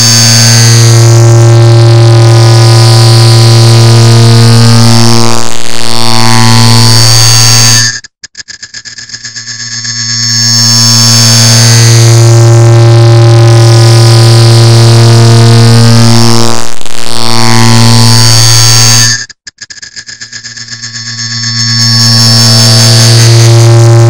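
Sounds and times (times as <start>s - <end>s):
distorted buzzing drone: 0.0s - 8.0s, 9.2s - 19.3s, 20.4s - 24.0s
rapid rattle of ticks: 8.0s - 9.8s, 19.3s - 21.3s.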